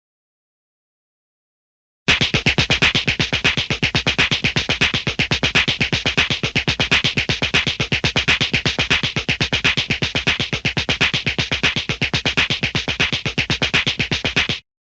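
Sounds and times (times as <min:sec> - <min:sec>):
rapid punch sound effects: 0:02.1 - 0:14.6.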